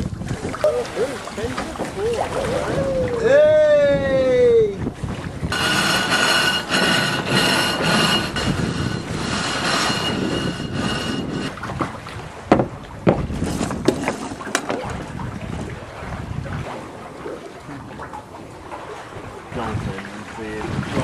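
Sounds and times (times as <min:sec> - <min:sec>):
rushing wind: 0:00.0 - 0:00.7, 0:01.9 - 0:16.8, 0:20.6 - 0:21.0
rushing water: 0:00.0 - 0:21.0
sharp knocks: 0:05.5 - 0:11.9.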